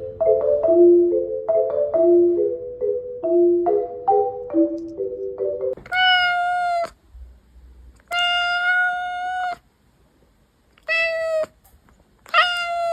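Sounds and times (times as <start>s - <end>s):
cat meowing: 5.8s - 7.0s, 8.0s - 9.6s, 10.8s - 11.6s, 12.2s - 12.9s.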